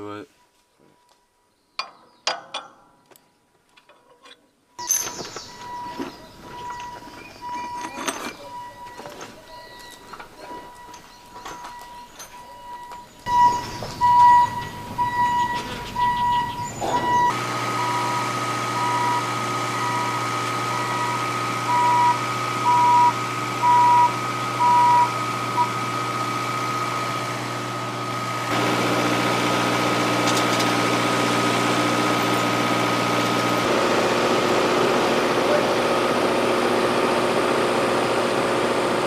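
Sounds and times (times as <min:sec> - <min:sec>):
reversing alarm beeping: 0:04.8 - 0:25.9
vehicle engine running: 0:13.1 - 0:39.0.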